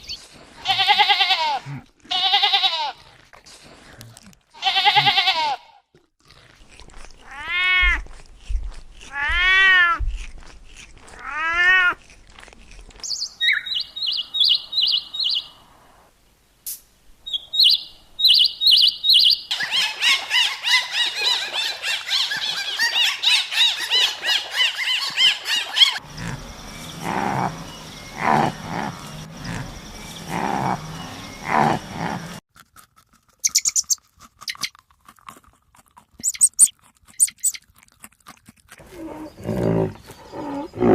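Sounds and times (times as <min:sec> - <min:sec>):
high bird chirping: 0:13.0 - 0:15.6, 0:17.3 - 0:21.4, 0:33.4 - 0:34.0, 0:36.2 - 0:37.6
drawn-out rising and falling calls: 0:13.0 - 0:16.0, 0:17.3 - 0:32.4, 0:36.2 - 0:37.6
low rough animal noises: 0:25.0 - 0:32.4, 0:38.8 - 0:40.9.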